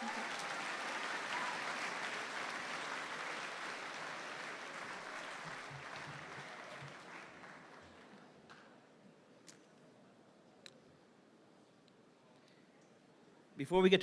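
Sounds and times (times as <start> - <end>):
audience applause: 0.0 - 8.4.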